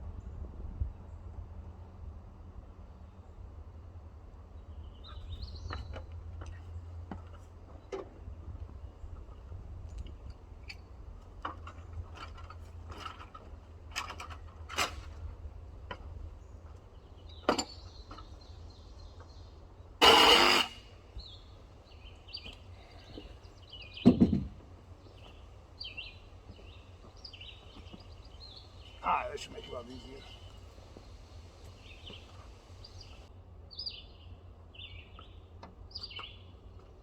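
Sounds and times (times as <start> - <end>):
birds chirping: 4.5 - 13.8, 15.9 - 37.0
loud harsh noise: 20.0 - 20.9
heavy thump: 24.0 - 24.6.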